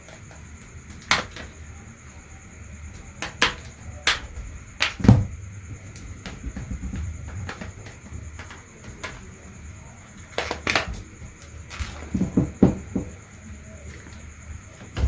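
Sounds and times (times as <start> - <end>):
small hard objects clicking: 0.0 - 1.6, 2.9 - 13.2
handling noise rumbling: 3.8 - 15.0.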